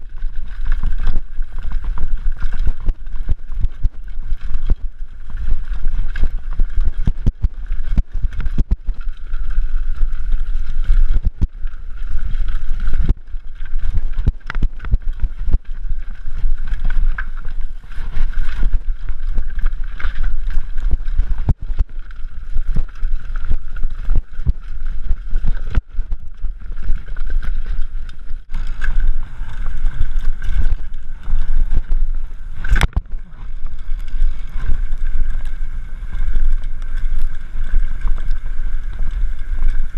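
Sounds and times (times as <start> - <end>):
mountain bike rattling over rough trail: 0.0 - 39.9.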